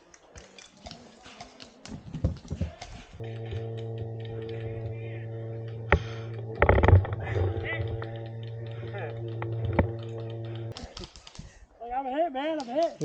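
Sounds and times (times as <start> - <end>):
clicking and tapping: 0.0 - 11.6
background music chord: 3.2 - 10.8.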